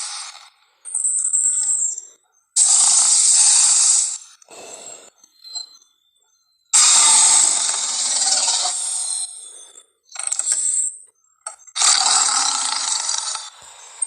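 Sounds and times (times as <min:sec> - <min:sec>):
monster hissing roar: 0:06.8 - 0:09.3, 0:11.8 - 0:13.7.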